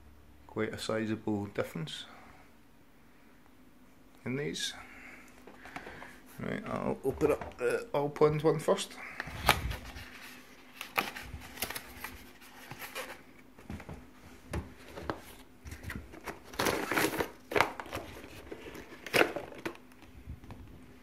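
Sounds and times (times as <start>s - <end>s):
packaging crinkling and tearing: 9.2s - 13.2s, 15.1s - 20.0s.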